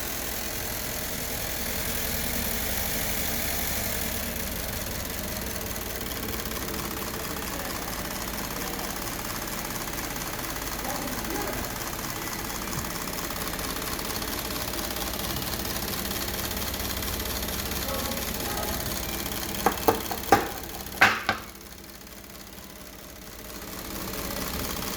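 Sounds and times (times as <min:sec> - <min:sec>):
car engine running: 0:00.0 - 0:24.9
sharp clicks and knocks: 0:19.5 - 0:21.6.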